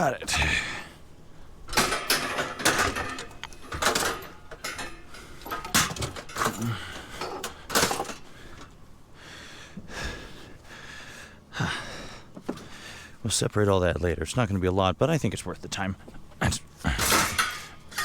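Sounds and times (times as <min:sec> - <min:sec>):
scrap metal clanking and rattling: 0:01.6 - 0:08.8, 0:16.8 - 0:18.0.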